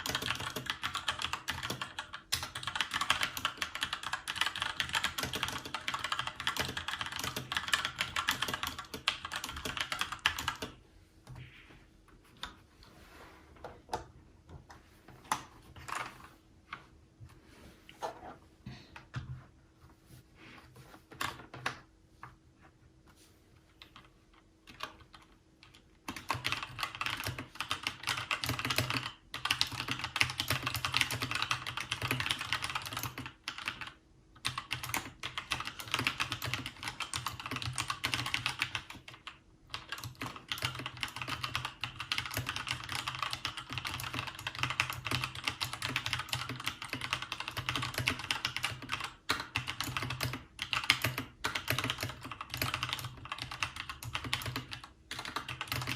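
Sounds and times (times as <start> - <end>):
mechanical keyboard typing: 0.0 - 10.8, 15.3 - 16.2, 23.8 - 55.9.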